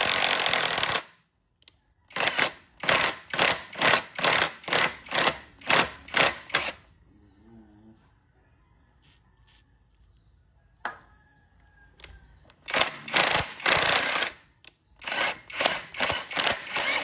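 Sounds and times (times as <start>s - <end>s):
power tool running in bursts: 12.7s - 14.4s, 15.0s - 17.0s.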